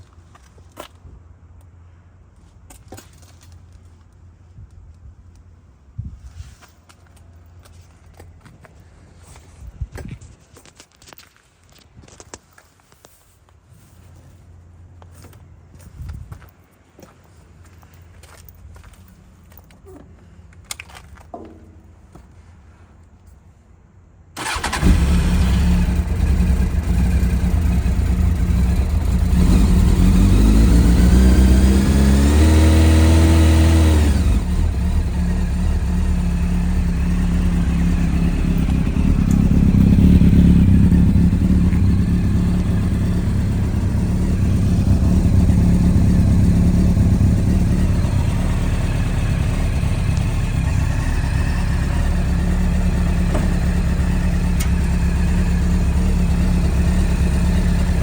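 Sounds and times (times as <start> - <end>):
motorcycle engine starting and revving: 24.4 - 58.0.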